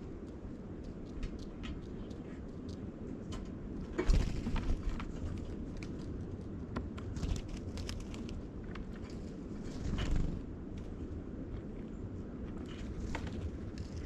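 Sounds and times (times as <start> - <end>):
steady low rumble: 0.0 - 14.0.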